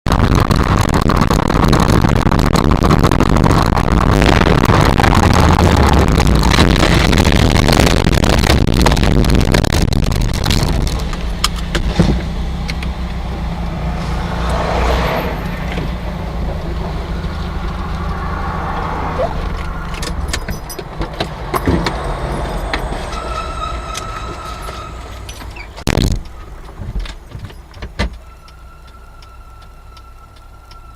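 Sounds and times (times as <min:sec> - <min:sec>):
car rumbling and rattling: 0:00.0 - 0:30.9
low engine hum: 0:00.1 - 0:30.9
sharp knocks and clatter: 0:19.5 - 0:23.2
scattered clicks: 0:23.9 - 0:30.9
steady high tone: 0:28.2 - 0:30.9.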